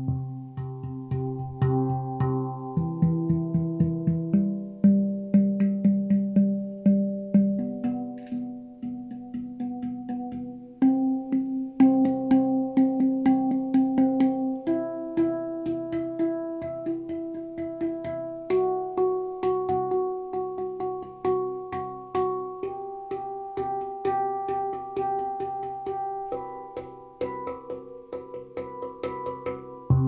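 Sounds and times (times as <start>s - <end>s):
handpan notes ringing: 0.0s - 30.0s.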